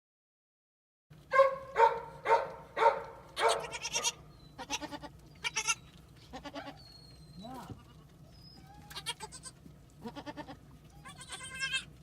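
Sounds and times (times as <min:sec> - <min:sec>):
goat bleating: 0:03.4 - 0:12.0.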